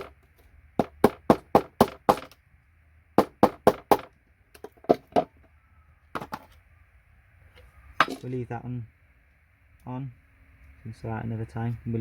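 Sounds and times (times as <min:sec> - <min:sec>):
hammer knocking on metal scraper: 0:00.8 - 0:02.3.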